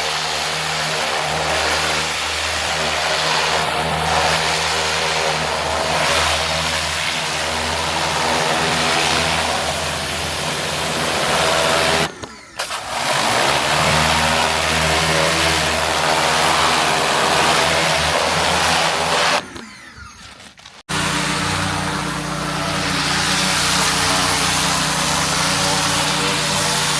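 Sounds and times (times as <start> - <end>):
pressure washer motor humming: 0.0 - 26.9
water spray hissing: 20.9 - 26.9.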